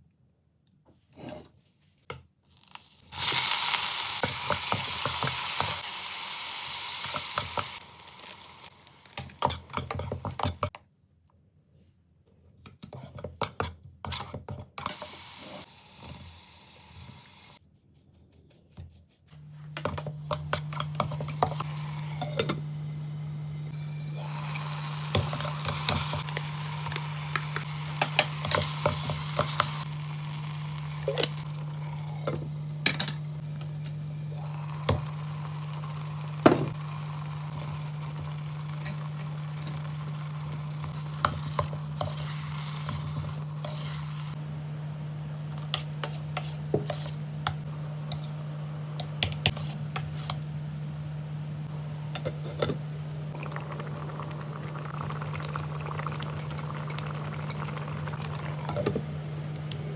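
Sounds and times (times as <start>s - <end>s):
food sizzling: 2.5s - 10.4s, 14.9s - 17.6s, 20.8s - 33.4s, 34.1s - 44.4s, 53.3s - 59.0s.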